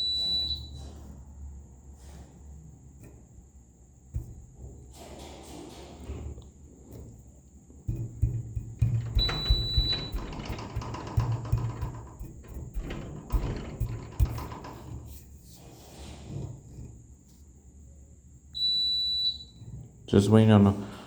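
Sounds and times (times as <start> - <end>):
fire alarm beep: 0.0 - 0.9, 9.1 - 10.5, 18.6 - 19.7
irregular knocks: 7.9 - 15.1.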